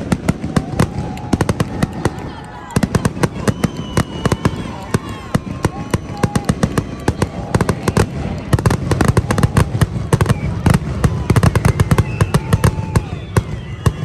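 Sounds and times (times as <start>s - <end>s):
fireworks bursting: 0.0s - 14.0s.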